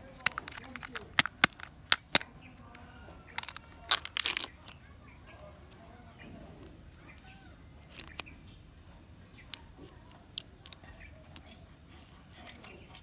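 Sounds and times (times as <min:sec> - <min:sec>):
plastic pieces clicking: 0:00.0 - 0:04.8, 0:07.2 - 0:08.3, 0:09.5 - 0:13.0.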